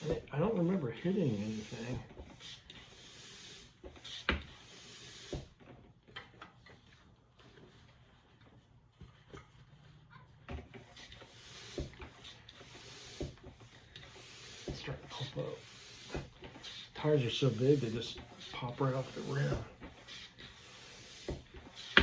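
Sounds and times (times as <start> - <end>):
knocks and rubbing of bike tire: 0.0 - 6.9, 10.4 - 22.0.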